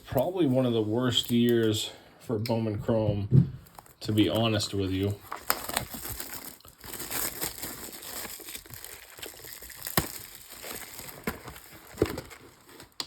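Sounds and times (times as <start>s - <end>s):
plastic wrapping crinkling: 3.6s - 13.0s.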